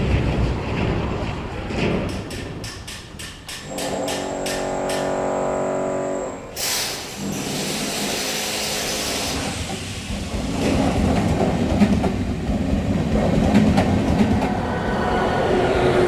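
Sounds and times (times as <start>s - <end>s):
wheels clicking over rail joints: 0.0s - 5.8s
train rumbling on rails: 0.0s - 16.0s.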